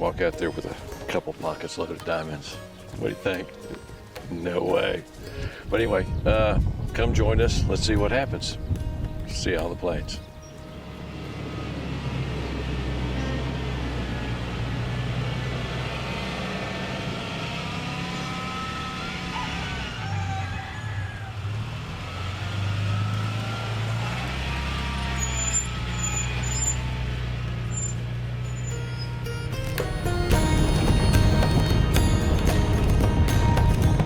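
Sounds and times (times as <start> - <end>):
truck engine hum: 9.7 - 34.0.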